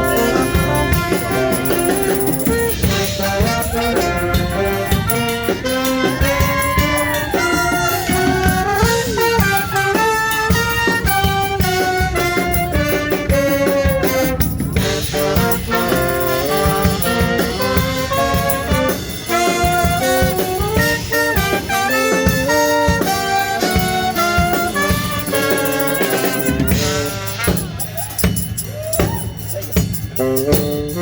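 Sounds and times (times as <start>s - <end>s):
live band playing: 0.0s - 31.0s.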